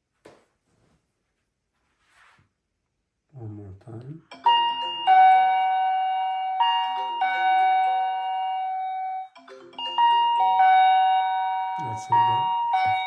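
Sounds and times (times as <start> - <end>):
two-tone doorbell chime: 4.3 - 13.0.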